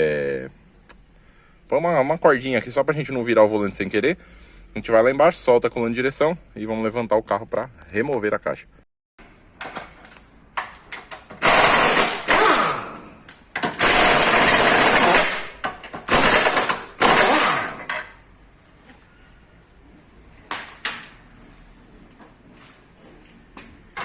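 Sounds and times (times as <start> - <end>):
air impact wrench bursts: 11.4 - 18.1.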